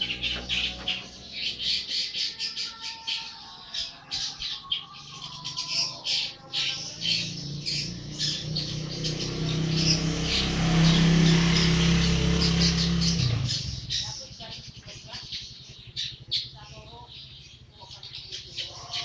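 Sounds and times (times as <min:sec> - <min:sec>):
bird chattering calls: 0:00.0 - 0:19.0.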